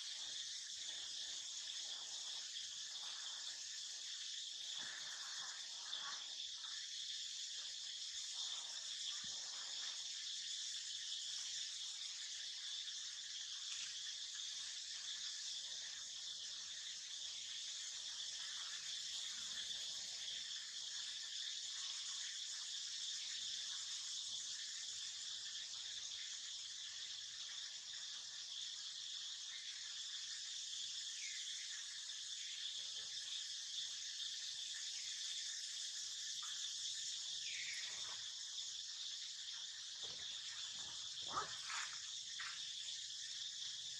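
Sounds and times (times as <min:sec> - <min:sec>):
insects shrilling: 0:00.0 - 0:43.9
faint short chirping calls: 0:39.6 - 0:43.3.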